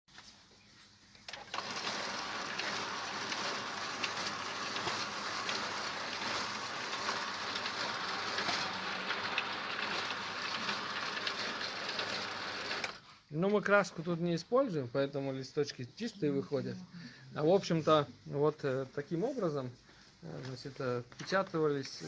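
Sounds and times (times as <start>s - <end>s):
printing press mechanical clatter: 1.3s - 13.0s.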